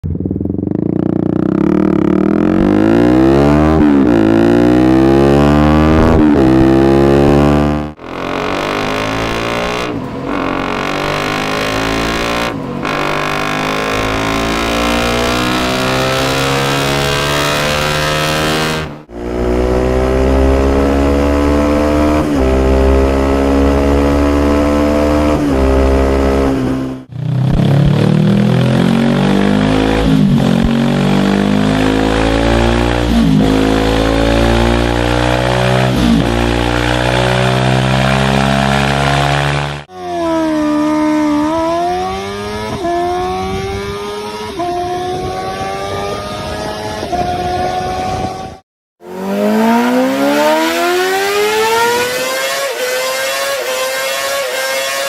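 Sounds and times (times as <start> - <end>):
motorcycle accelerating through gears: 0.0 - 55.0.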